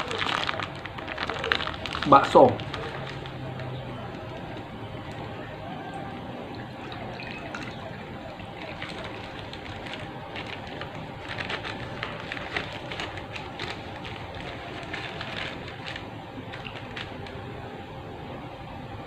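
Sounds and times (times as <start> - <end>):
small clicks and crackles: 0.0 - 5.2, 8.6 - 17.4
steady background hum: 0.0 - 19.0.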